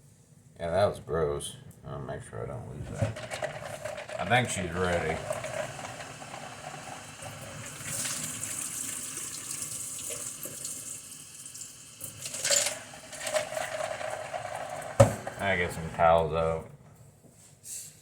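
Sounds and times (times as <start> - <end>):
tap running water: 3.2 - 15.8.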